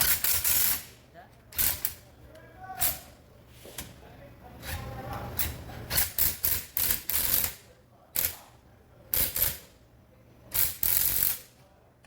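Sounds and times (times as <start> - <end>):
impact wrench bursts: 0.0 - 0.9, 1.5 - 2.0, 5.4 - 8.4, 9.1 - 9.7, 10.5 - 11.5.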